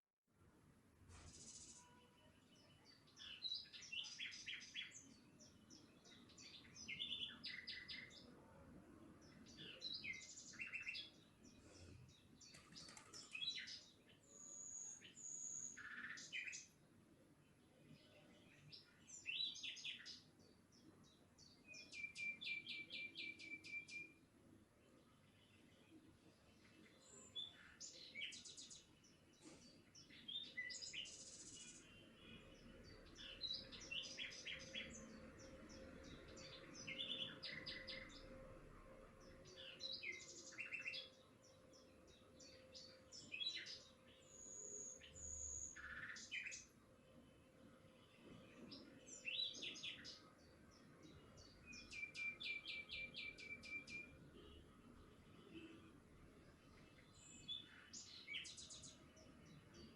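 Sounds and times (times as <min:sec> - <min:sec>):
birds chirping and trilling: 0:01.1 - 0:16.8, 0:17.6 - 0:24.2, 0:24.8 - 0:59.9.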